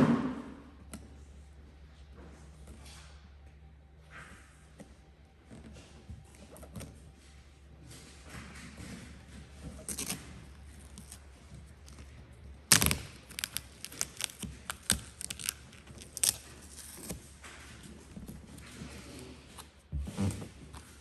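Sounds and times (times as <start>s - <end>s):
sharp knock: 0.0s - 0.6s
steady low hum: 0.0s - 21.0s.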